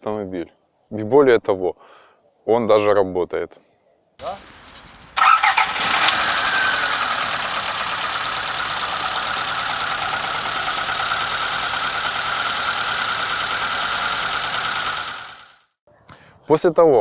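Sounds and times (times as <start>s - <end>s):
car engine idling: 4.2s - 15.6s.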